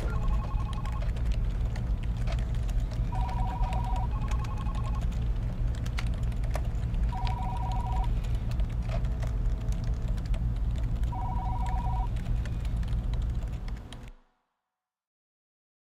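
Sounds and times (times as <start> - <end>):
keyboard clicks: 0.0 - 14.2
low hum: 0.0 - 14.5
telephone ringing two-tone trill: 11.2 - 12.1.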